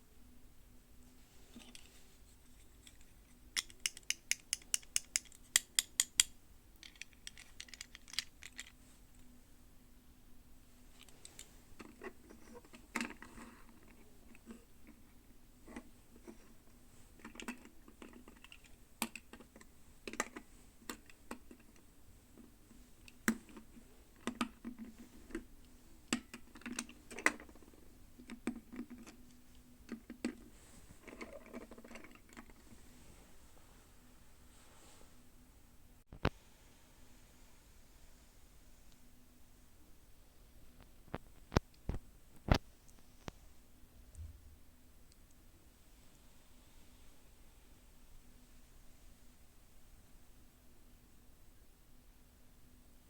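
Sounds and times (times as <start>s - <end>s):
plastic toy parts clicking: 2.8s - 8.8s.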